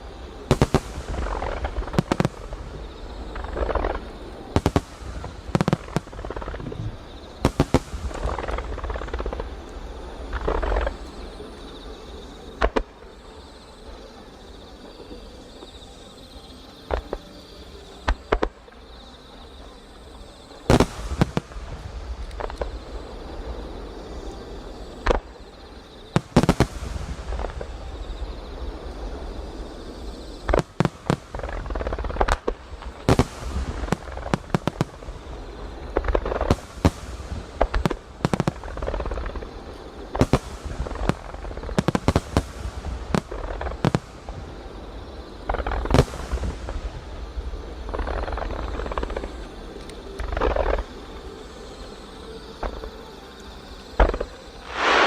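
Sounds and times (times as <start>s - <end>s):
fireworks bursting with sharp bangs: 0.0s - 11.3s, 12.6s - 13.0s, 20.7s - 23.7s, 25.0s - 25.4s, 26.1s - 28.2s, 30.2s - 47.2s, 54.0s - 55.0s
fireworks crackling: 0.0s - 11.3s, 20.7s - 23.1s, 26.2s - 27.9s, 30.2s - 49.6s, 54.0s - 55.0s.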